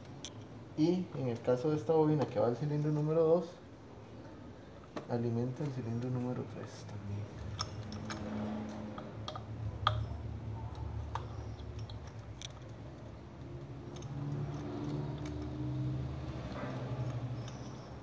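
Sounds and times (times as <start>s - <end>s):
hands clicking plastic connectors: 9.0s - 10.1s, 10.8s - 18.0s.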